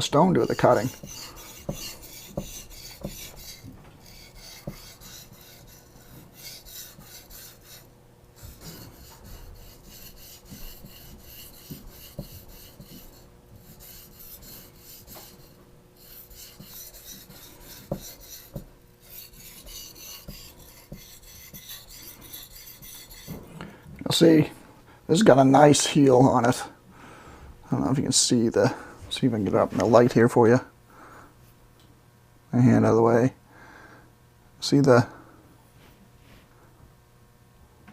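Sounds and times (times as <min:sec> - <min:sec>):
knife scraping on whetstone: 0:00.3 - 0:23.5.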